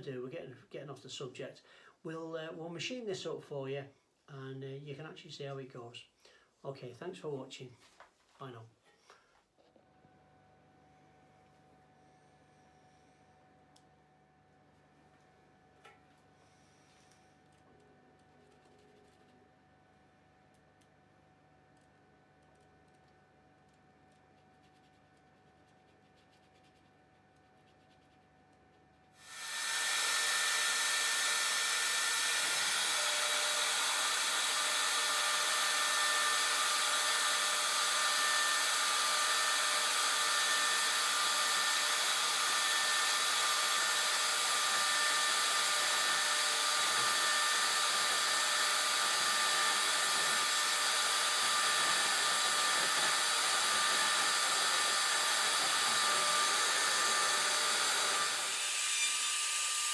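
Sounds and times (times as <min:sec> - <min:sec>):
router vacuum rushing hiss: 0:29.2 - 0:59.9.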